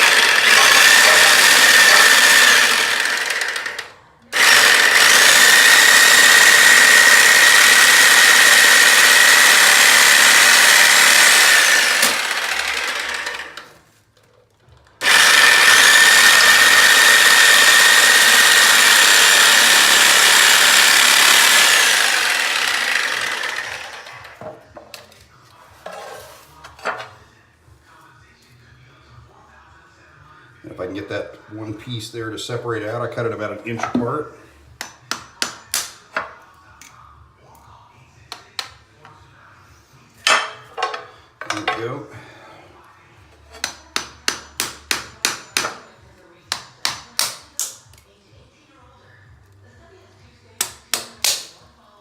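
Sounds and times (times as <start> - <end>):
reciprocating saw cutting plastic: 0.0 - 13.7, 15.0 - 24.4.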